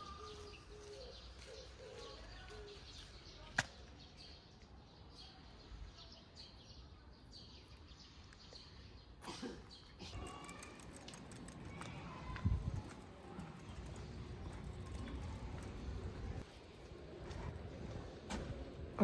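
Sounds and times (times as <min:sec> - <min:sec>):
birds chirping: 0:09.7 - 0:19.0.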